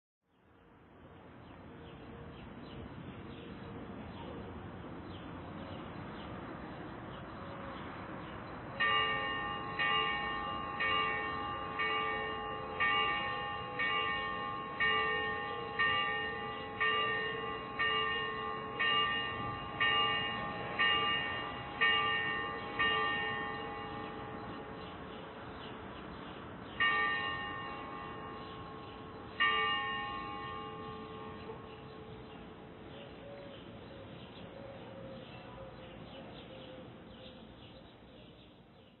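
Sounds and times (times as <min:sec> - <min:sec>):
steady background noise: 0:00.4 - 0:39.0
church bell tolling: 0:08.8 - 0:25.9, 0:26.6 - 0:33.2.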